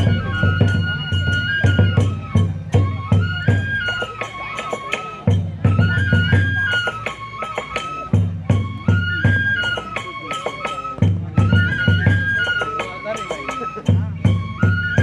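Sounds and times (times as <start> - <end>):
heavy taiko drum beats: 0.0 - 7.3, 8.1 - 9.6
bamboo flute melody: 0.0 - 15.0.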